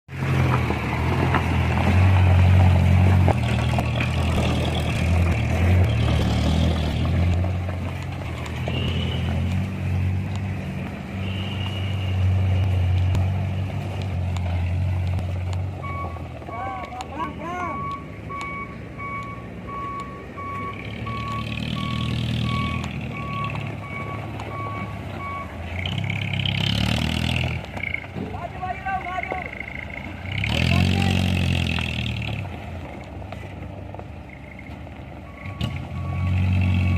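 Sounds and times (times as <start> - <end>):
vehicle engine revving: 0.1 - 36.9
reversing alarm beeping: 15.8 - 25.6, 35.2 - 36.9.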